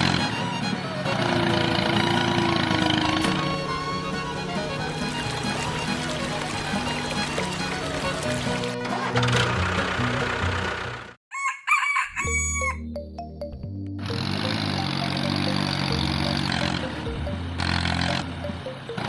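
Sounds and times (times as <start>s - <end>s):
rooster crowing: 11.3s - 12.8s
background music with bass line: 12.3s - 19.0s.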